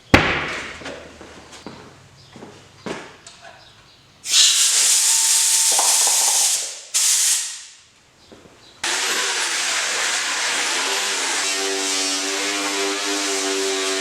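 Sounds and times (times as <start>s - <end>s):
compressed-air tool hissing: 4.2s - 7.8s, 8.8s - 14.0s.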